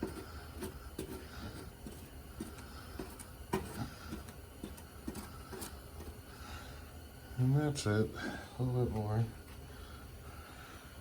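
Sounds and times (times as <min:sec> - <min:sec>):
spreader scraping body filler: 0:00.0 - 0:06.2
steady low hum: 0:00.0 - 0:11.0.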